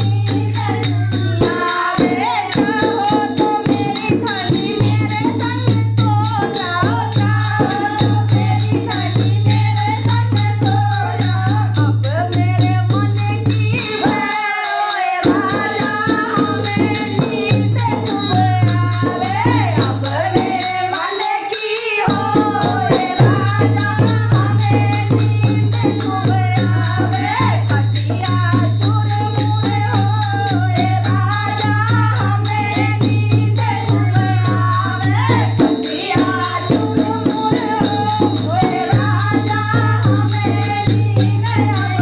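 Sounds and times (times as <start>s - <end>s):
fast hand percussion: 0.0s - 42.0s
voices singing: 0.0s - 42.0s.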